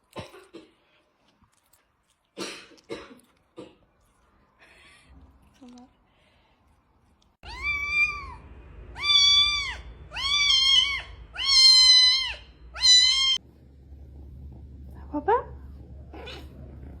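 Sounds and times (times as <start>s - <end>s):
cat meowing: 7.4s - 13.4s.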